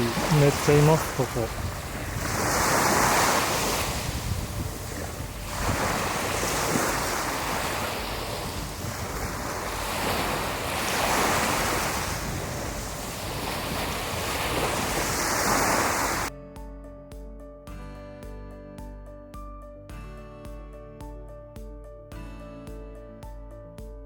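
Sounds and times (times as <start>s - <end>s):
surf washing onto beach: 0.0s - 16.3s
wind buffeting microphone: 0.0s - 16.3s.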